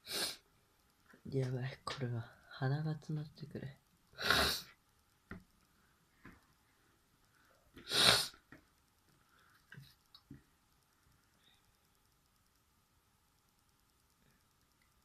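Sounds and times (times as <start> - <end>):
person sneezing: 0.0 - 0.4, 4.2 - 4.7, 7.8 - 8.4.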